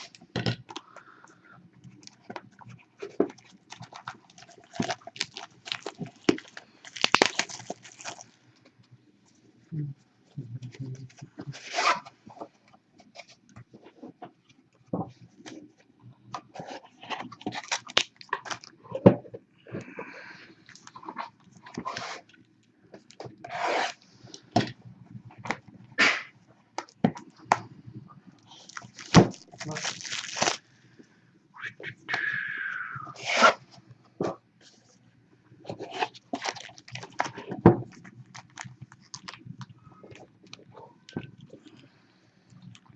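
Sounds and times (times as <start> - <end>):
card boxes crinkling and clicking: 1.9 - 8.3, 35.6 - 41.3.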